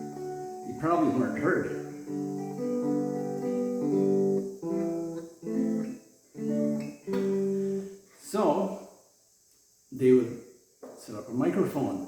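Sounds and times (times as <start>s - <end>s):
acoustic guitar strumming chords: 0.0s - 8.0s.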